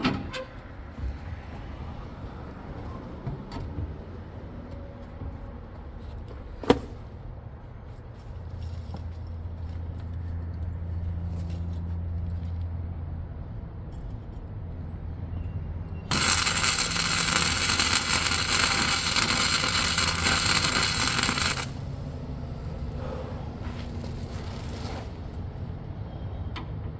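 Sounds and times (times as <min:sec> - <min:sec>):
welder low hum: 0:16.1 - 0:22.1, 0:23.0 - 0:25.3
welding arc crackling: 0:16.1 - 0:22.1, 0:23.6 - 0:25.4.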